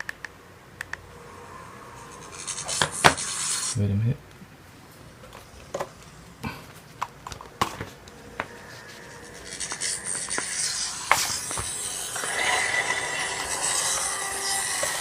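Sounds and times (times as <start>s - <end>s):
hissing noise: 1.1s - 3.8s, 7.9s - 15.0s.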